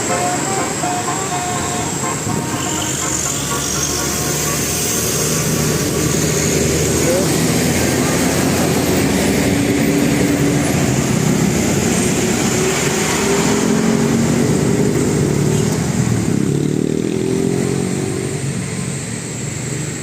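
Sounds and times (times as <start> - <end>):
held tones shifting in pitch: 0.0 - 9.3
motor vehicle engine running: 0.0 - 17.6
road noise: 0.0 - 20.0.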